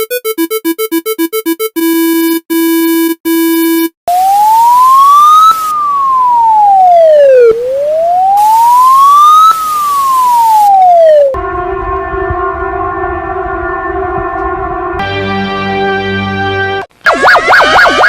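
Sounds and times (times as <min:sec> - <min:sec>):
wailing electronic siren: 0:04.1 - 0:15.2, 0:17.0 - 0:18.0
steady buzzy tone: 0:11.3 - 0:15.2.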